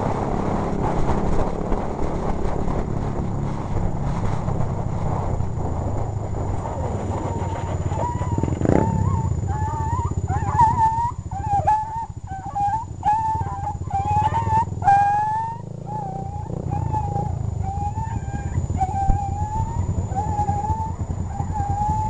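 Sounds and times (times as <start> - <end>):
steady low rumble: 0.0 - 22.0
dog whining: 6.6 - 22.0.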